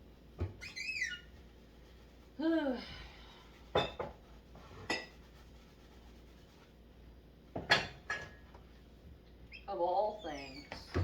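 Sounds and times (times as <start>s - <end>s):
dishes knocking and clinking: 3.7s - 5.2s, 7.5s - 8.5s.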